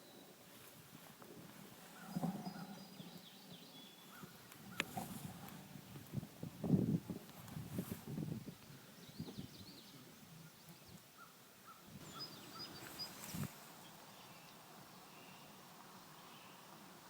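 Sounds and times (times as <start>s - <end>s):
faint bird chirps: 0.0s - 6.2s, 7.9s - 17.0s
low rustling: 0.0s - 9.4s, 11.9s - 14.8s.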